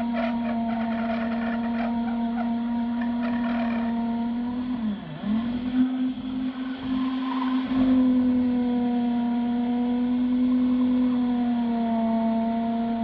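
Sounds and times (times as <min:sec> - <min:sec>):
electric drill motor whine: 0:00.0 - 0:04.0
drill bit grinding concrete: 0:00.0 - 0:04.1.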